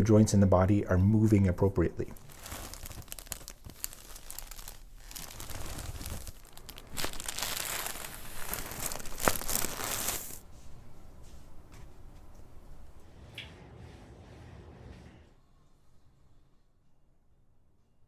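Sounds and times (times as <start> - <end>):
crinkling and rustling: 1.9 - 10.5.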